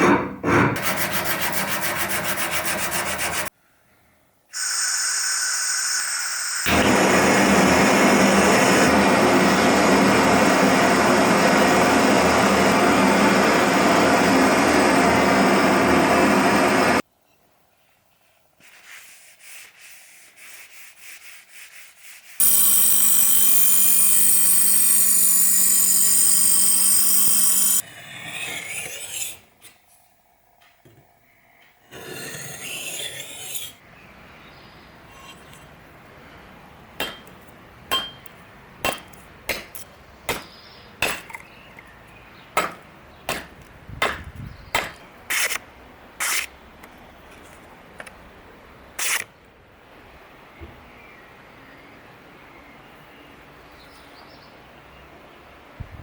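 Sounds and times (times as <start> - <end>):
rubbing and scraping: 0.0 - 3.5, 18.6 - 22.6
power tool abrading: 4.6 - 17.0, 22.4 - 27.8.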